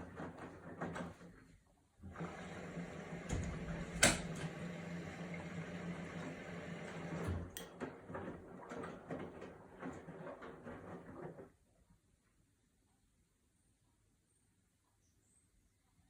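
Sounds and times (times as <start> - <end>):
washing machine knocking and clicking: 0.0 - 1.3, 2.0 - 11.5
washing machine humming: 0.0 - 11.7.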